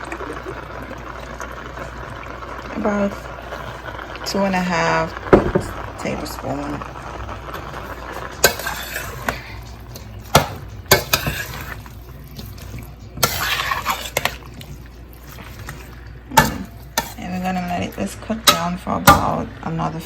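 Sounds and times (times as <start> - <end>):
utensil scraping a pot: 2.7 - 20.0
utensil clinking on a pot: 8.3 - 19.5.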